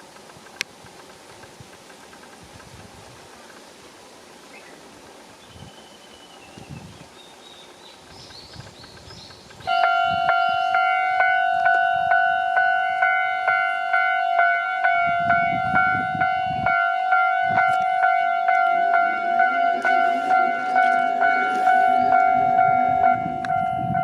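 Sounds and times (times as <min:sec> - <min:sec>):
faint steady hiss: 0:00.0 - 0:15.2
level crossing bell clanging: 0:09.7 - 0:24.0.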